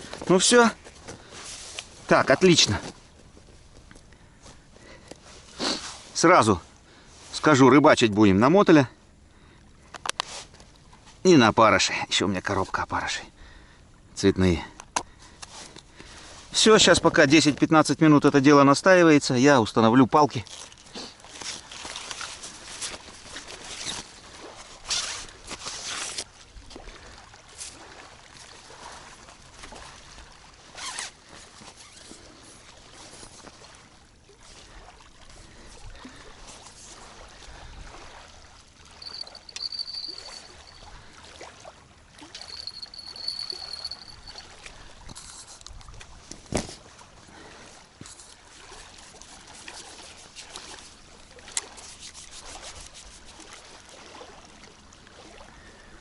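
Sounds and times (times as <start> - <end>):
fishing gear rustling and knocking: 0.0 - 5.6, 20.3 - 26.3, 38.9 - 41.0, 42.4 - 46.9, 48.0 - 51.0
faint water lapping: 0.0 - 56.0
short high steady tones: 39.0 - 40.9, 42.5 - 44.4.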